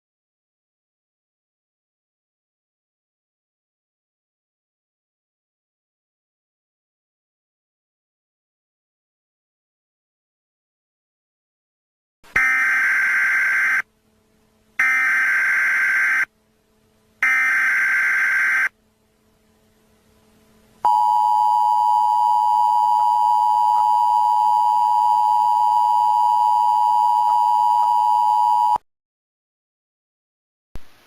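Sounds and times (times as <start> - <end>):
buzzy digital data bursts: 17.3 - 18.7
two-tone attention signal: 20.8 - 28.8.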